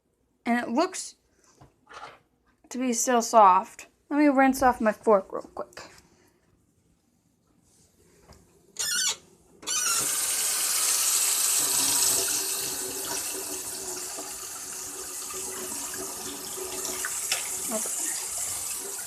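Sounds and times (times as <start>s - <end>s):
kitchen tap running into sink: 9.6s - 19.0s.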